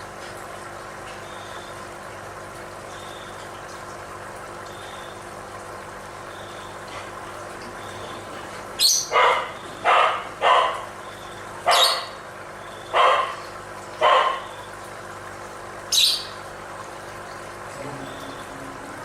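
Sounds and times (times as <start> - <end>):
dog barking: 9.1 - 10.9, 11.6 - 12.2, 12.9 - 13.4, 14.0 - 14.6.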